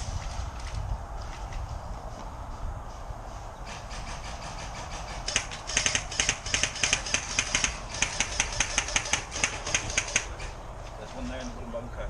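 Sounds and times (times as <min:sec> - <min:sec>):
steady low rumble: 0:00.0 - 0:03.9.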